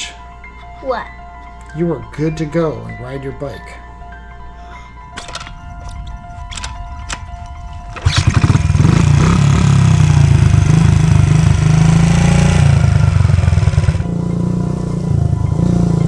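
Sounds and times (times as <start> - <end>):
dirt bike engine running: 7.8 - 16.0.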